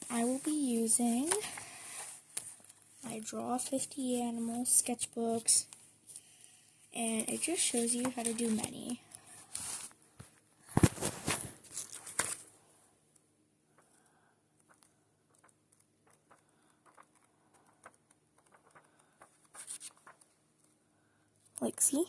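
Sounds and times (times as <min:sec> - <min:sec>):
paper pages rustling: 0:07.2 - 0:12.5, 0:14.6 - 0:20.8.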